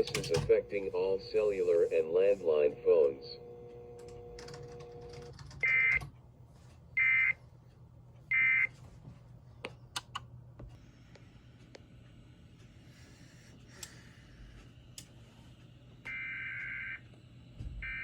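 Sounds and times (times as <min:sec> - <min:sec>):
steady pitched tone: 0:00.0 - 0:05.0
low hum: 0:00.0 - 0:05.3.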